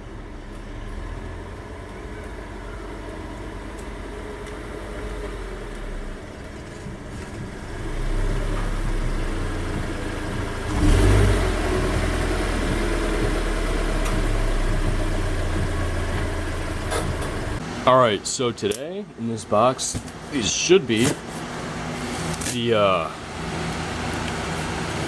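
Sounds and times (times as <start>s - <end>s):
car engine running: 0.0s - 18.2s.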